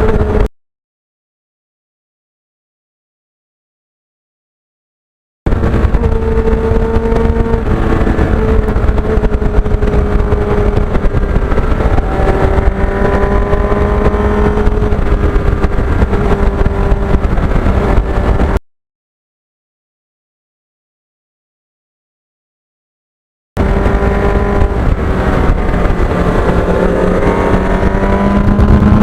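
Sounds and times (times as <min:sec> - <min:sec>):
motorcycle engine rumbling: 0:00.0 - 0:00.5, 0:05.5 - 0:18.6, 0:23.6 - 0:29.0.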